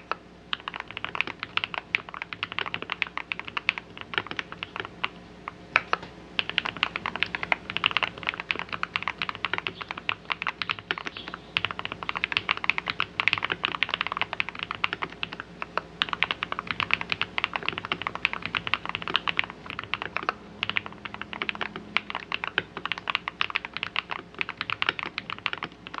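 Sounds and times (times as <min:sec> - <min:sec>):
fast typing on a keyboard: 0:00.0 - 0:05.2, 0:05.8 - 0:26.0.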